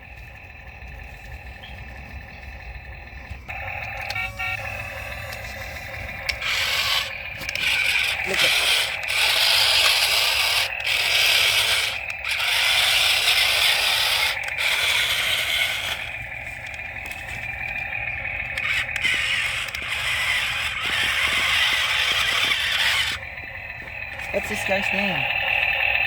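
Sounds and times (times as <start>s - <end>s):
toy electric motors whirring: 0.1s - 26.0s.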